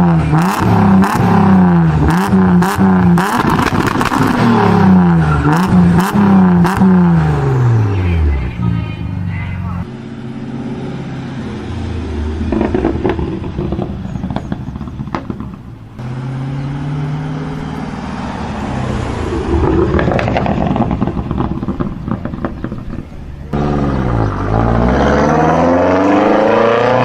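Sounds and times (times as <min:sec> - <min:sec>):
car engine held at high revs: 0:00.0 - 0:08.0, 0:23.5 - 0:27.0
exhaust popping and crackling: 0:00.0 - 0:27.0.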